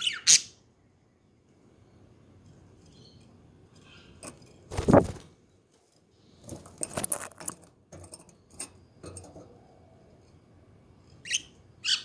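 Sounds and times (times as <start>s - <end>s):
budgies chirping: 0.0s - 0.6s
light clicks and rattles: 2.8s - 4.7s, 5.7s - 9.6s.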